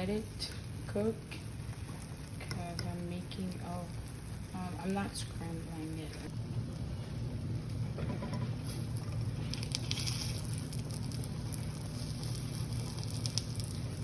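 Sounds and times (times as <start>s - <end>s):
steady low hum: 0.0s - 14.0s
food sizzling in a pan: 8.0s - 14.0s.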